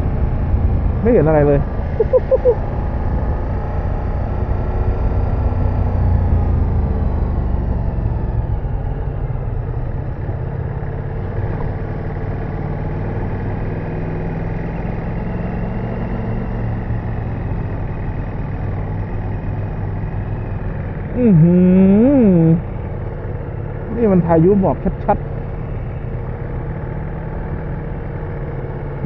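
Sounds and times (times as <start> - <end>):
motorcycle engine droning: 0.0 - 29.0.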